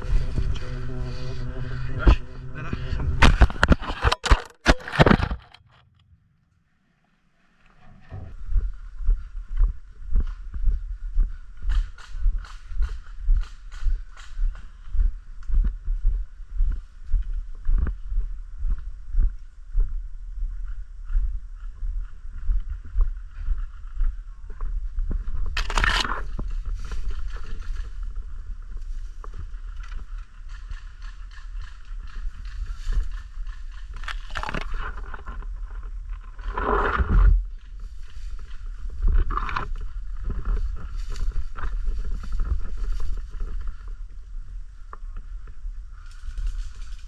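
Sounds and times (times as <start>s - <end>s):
low rumble: 0.0s - 4.2s, 5.8s - 47.0s
camera scraping: 0.0s - 6.0s, 25.5s - 28.0s, 29.7s - 43.7s
rustling: 25.5s - 44.1s.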